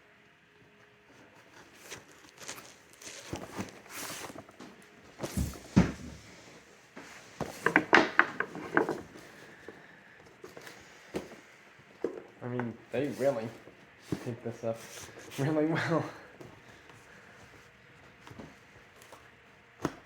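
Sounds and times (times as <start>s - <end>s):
cardboard box scraping and rustling: 1.3s - 6.3s.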